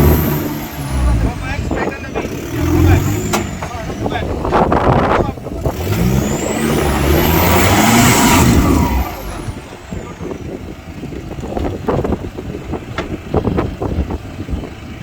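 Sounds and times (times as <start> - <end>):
engine revving hard: 0.0 - 4.4, 5.4 - 10.4.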